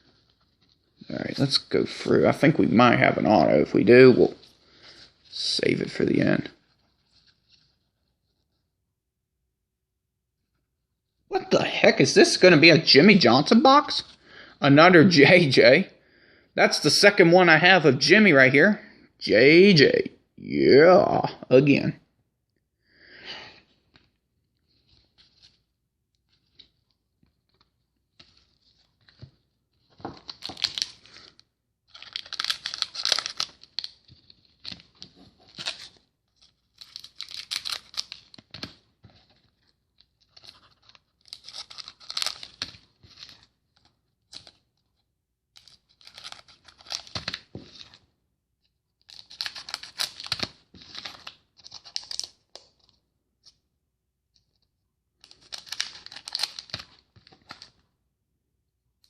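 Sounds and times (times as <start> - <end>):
foil wrappers tearing and crinkling: 30.2 - 31.3, 31.9 - 34.1, 35.4 - 38.5, 40.3 - 43.4, 45.6 - 47.9, 49.1 - 52.4, 55.3 - 57.7.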